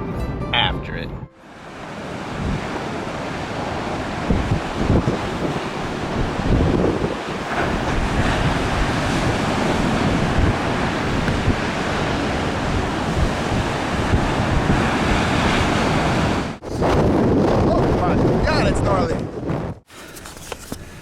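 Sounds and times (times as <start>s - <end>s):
ocean surf breaking: 1.4s - 17.0s
wind buffeting microphone: 1.5s - 19.9s.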